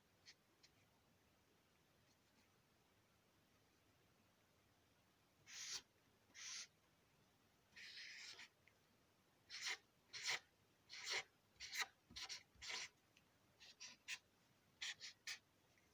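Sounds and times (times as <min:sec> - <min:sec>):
marker scratching on paper: 0:05.5 - 0:06.7, 0:07.8 - 0:08.5, 0:09.5 - 0:13.0, 0:13.6 - 0:14.2, 0:14.8 - 0:15.4.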